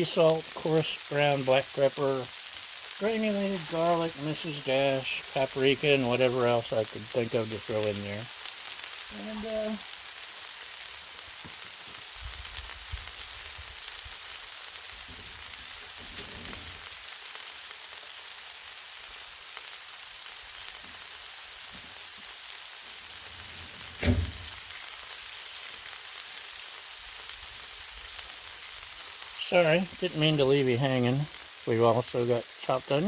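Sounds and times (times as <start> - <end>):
chicken sizzling on a griddle: 0.0 - 33.0
sharp knock: 24.0 - 24.6.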